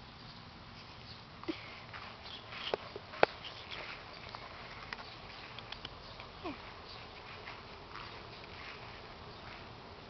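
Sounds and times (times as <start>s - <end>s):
light clicks and taps: 4.2s - 6.3s.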